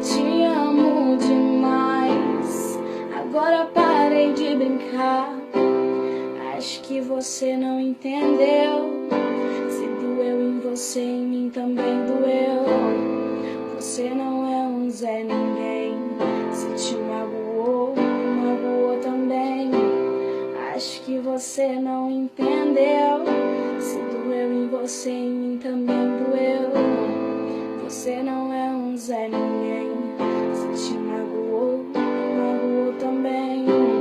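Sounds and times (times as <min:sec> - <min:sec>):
sustained keyboard chords: 0:00.0 - 0:34.0.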